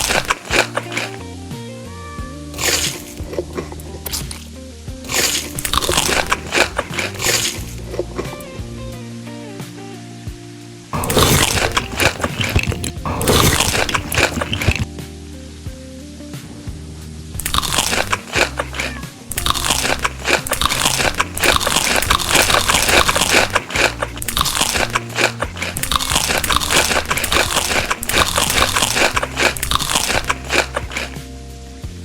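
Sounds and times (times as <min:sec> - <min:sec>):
crunching of crisp food: 0:00.0 - 0:01.2, 0:02.6 - 0:08.5, 0:11.0 - 0:14.9, 0:17.4 - 0:31.3
background music with bass: 0:00.0 - 0:32.0.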